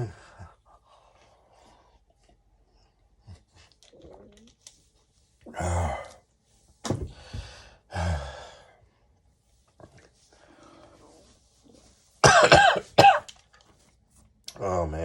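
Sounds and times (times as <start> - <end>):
faint breathing: 7.0 - 9.2
man coughing harshly: 12.2 - 13.3.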